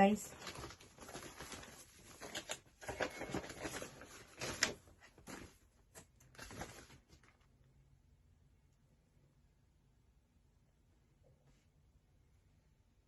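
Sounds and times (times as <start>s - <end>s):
card packaging rustling: 0.2s - 7.5s.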